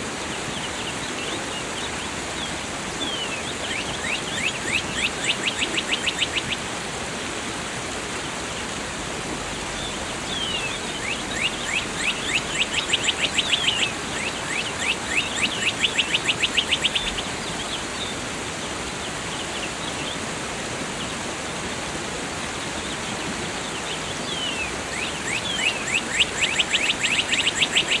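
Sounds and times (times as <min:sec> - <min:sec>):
waterfall rushing: 0:00.0 - 0:28.0
songbird trilling: 0:02.4 - 0:06.6, 0:09.7 - 0:18.1, 0:23.9 - 0:28.0.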